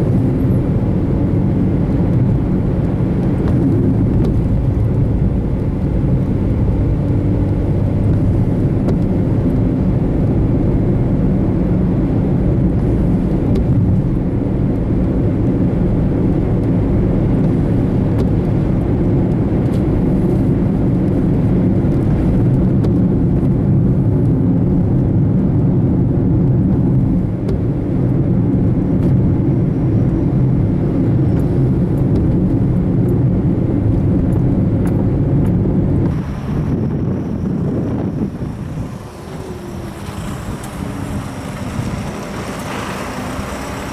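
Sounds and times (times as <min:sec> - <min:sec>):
car engine and road noise: 0:00.0 - 0:43.9.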